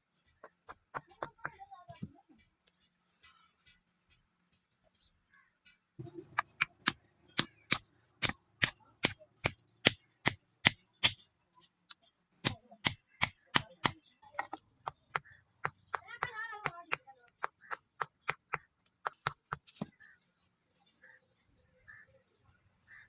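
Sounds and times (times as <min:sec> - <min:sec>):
hammer striking steel on anvil: 0:06.4 - 0:11.3.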